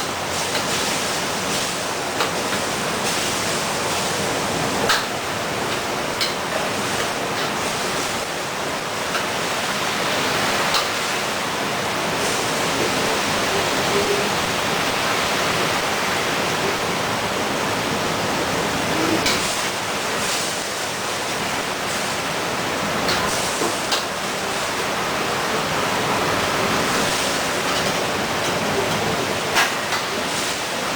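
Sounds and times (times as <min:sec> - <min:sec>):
food sizzling in oil: 0:00.2 - 0:11.4.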